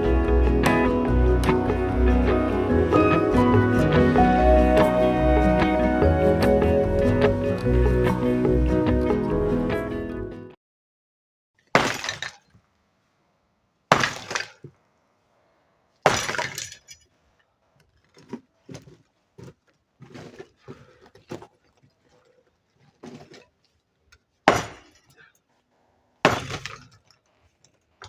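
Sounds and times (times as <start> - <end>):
concrete crashing impacts: 11.7 - 12.5, 13.9 - 14.8, 16.0 - 16.9, 24.5 - 25.2, 26.3 - 27.0
rubble clattering: 16.0 - 17.1.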